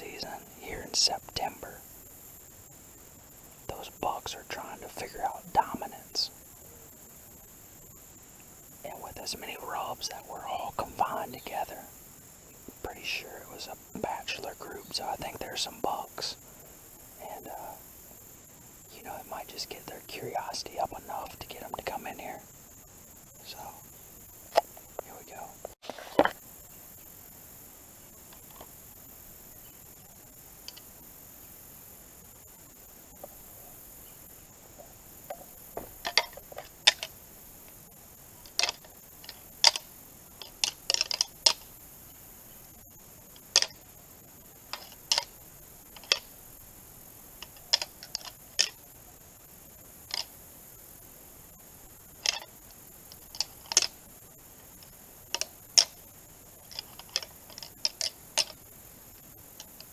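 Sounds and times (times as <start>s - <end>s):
antlers clicking together: 38.5s - 41.7s, 43.5s - 43.8s, 44.7s - 45.4s, 46.0s - 46.3s, 53.2s - 54.0s, 56.6s - 58.6s.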